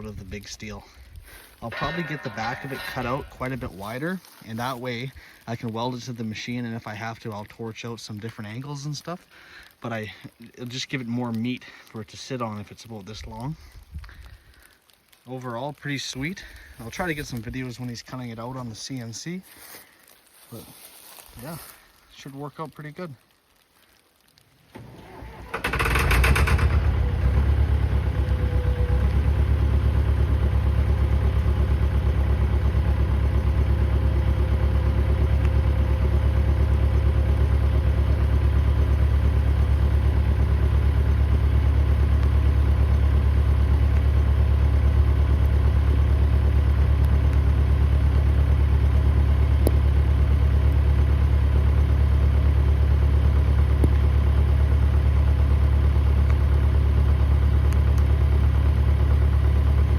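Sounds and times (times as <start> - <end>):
loader engine idling: 1.6 - 4.2, 24.8 - 59.9.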